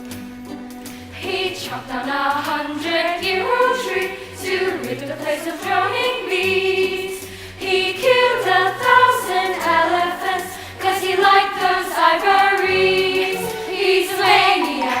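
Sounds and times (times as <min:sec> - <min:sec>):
low instrumental accompaniment: 0:00.0 - 0:15.0
girls' choir singing: 0:01.1 - 0:15.0.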